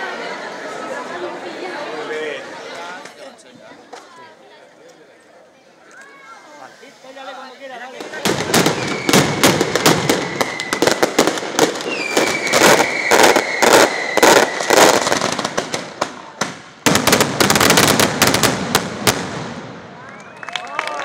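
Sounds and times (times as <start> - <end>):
firecrackers banging: 7.1 - 20.0
high steady whistle: 8.7 - 9.5, 10.1 - 11.0, 11.9 - 15.0.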